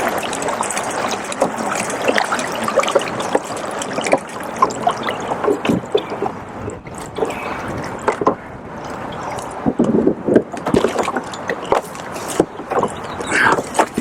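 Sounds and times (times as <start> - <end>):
river current gurgling against hull: 0.0 - 14.0
water splashing: 0.0 - 14.0
sharp knocks and clicks: 8.0 - 14.0.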